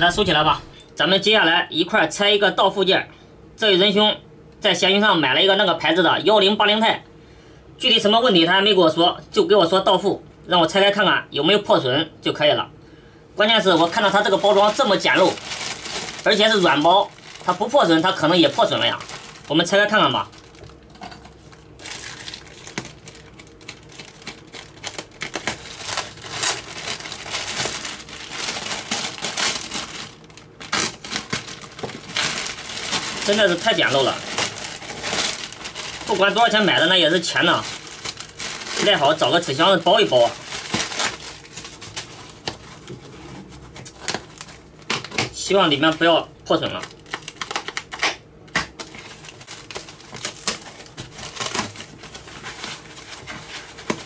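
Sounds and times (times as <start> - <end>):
parcel wrapping crinkling: 13.6 - 46.0, 46.6 - 48.1, 48.7 - 54.0.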